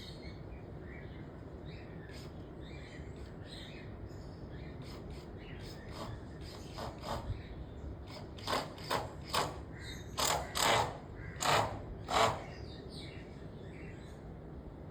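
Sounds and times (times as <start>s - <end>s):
bird giving harsh raspy calls: 8.1s - 12.7s.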